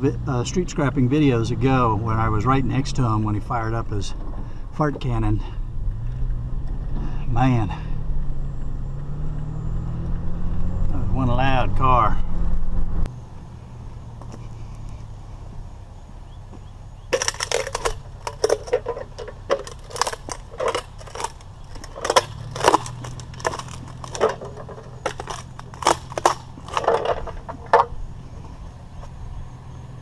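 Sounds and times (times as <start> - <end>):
low engine hum: 0.0 - 30.0
scrap metal clanking: 17.1 - 28.0.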